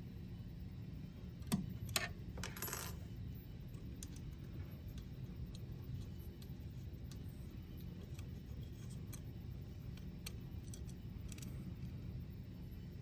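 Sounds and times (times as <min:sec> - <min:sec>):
low steady hum: 0:00.0 - 0:13.0
small clicks of screws handled: 0:04.9 - 0:11.6.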